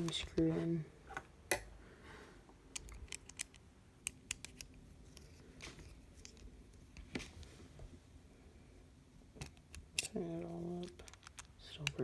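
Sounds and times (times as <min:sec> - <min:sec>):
metallic clicks and taps: 0:02.7 - 0:04.7.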